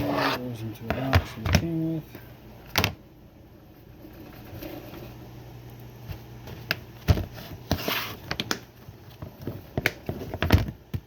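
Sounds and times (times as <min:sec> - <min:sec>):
rustling scrape: 0:00.0 - 0:00.5, 0:07.3 - 0:08.2.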